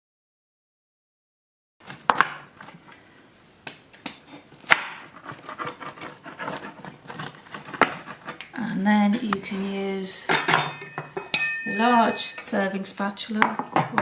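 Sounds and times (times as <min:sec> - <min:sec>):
pizza cutter scraping stone: 0:04.3 - 0:08.5.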